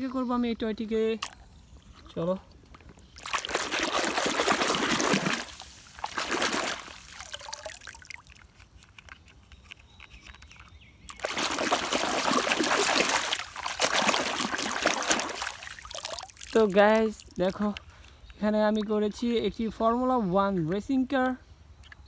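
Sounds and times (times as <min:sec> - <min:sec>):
water running and splashing: 0:03.2 - 0:08.6, 0:11.1 - 0:17.6.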